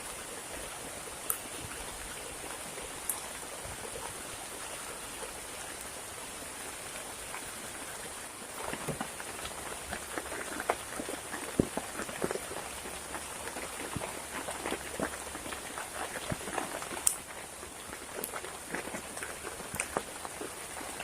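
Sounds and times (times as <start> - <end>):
heavy rain falling: 0.0 - 21.0
raindrops tapping close by: 0.0 - 21.0.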